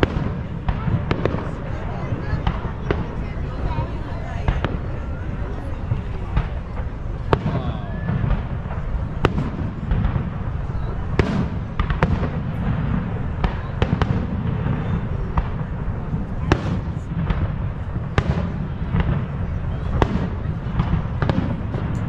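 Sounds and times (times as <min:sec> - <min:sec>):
fireworks bangs: 0:00.0 - 0:22.0
steady low rumble: 0:00.0 - 0:22.0.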